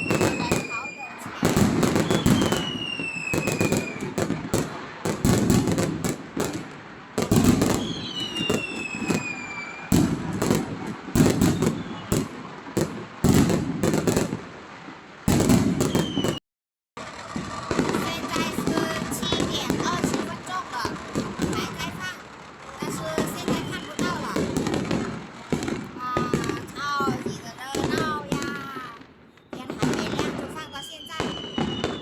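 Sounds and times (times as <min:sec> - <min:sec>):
firework whistles falling in pitch: 0:00.0 - 0:04.5, 0:07.3 - 0:10.1, 0:11.2 - 0:12.3, 0:15.4 - 0:16.4, 0:23.0 - 0:24.6, 0:29.3 - 0:32.0
fireworks bangs and cracks: 0:00.0 - 0:16.4, 0:17.0 - 0:32.0.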